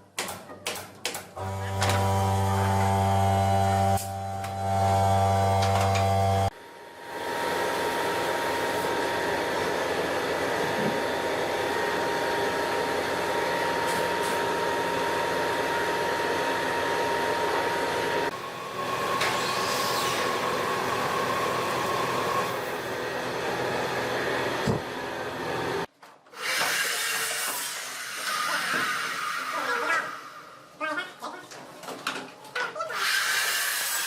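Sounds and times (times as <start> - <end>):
electric power tool running: 1.4 - 30.5.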